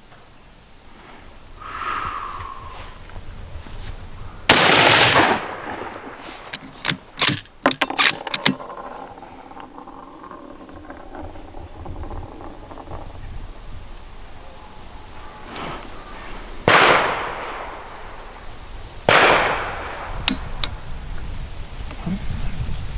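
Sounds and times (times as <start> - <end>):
rifle shot echoing: 4.5 - 6.4, 16.6 - 18.3, 19.0 - 20.6
rifle bolt metallic clicks: 6.5 - 8.6.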